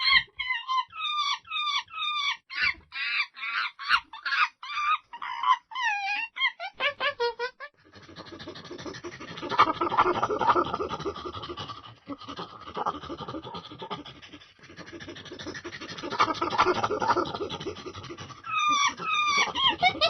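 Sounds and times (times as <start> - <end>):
monkey high-pitched calls: 0.0 - 7.6, 18.4 - 20.0.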